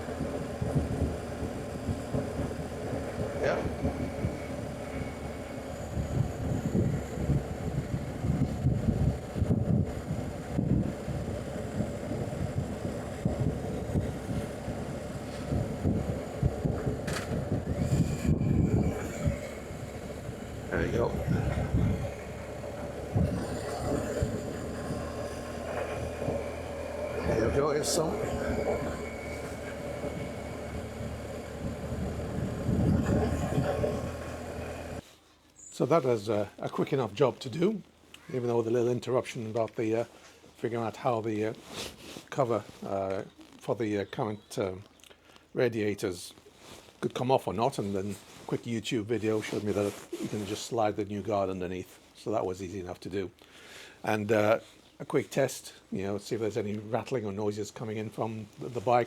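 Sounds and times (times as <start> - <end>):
motorcycle engine running: 0.0 - 35.0
wind buffeting microphone: 0.0 - 35.0
tyre noise on road: 0.0 - 43.8.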